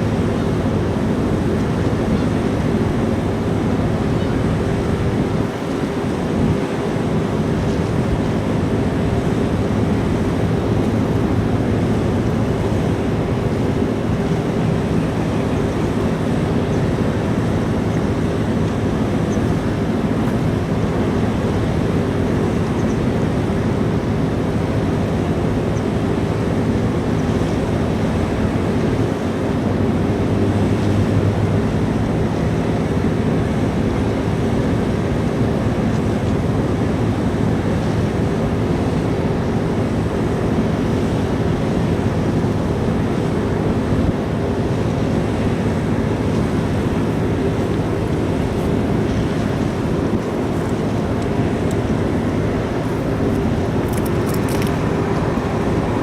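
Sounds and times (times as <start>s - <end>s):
ship engines droning: 0.0s - 56.0s
water noise: 0.0s - 56.0s
wind: 0.0s - 56.0s.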